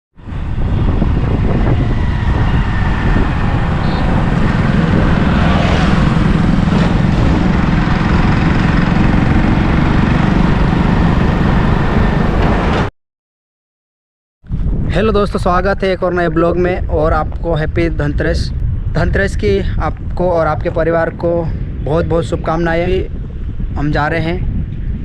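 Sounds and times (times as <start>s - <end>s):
vehicle rumble: 0.2s - 12.9s.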